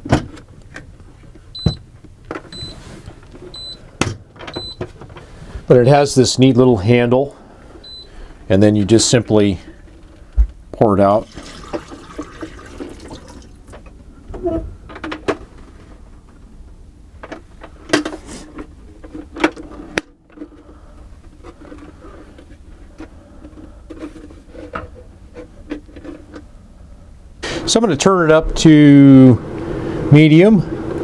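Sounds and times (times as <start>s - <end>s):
dehumidifier hum: 0.0s - 31.0s
water pouring from bucket: 11.2s - 13.6s.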